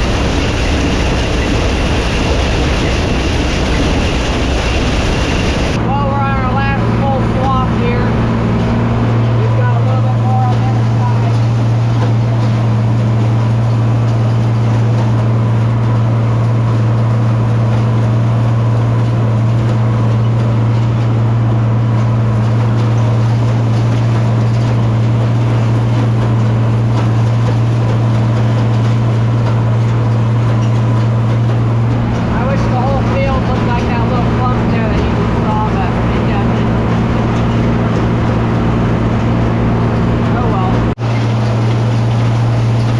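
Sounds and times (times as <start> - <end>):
faint steady whine: 0.0 - 9.6, 31.7 - 41.0
tractor engine droning: 0.0 - 42.9.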